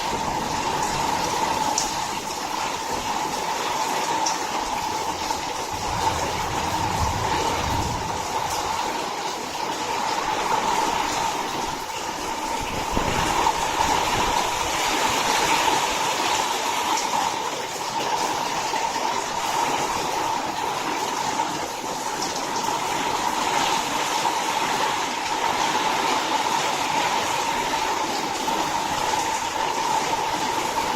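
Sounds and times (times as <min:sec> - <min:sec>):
storm wind rushing and whistling: 0:04.7 - 0:16.0.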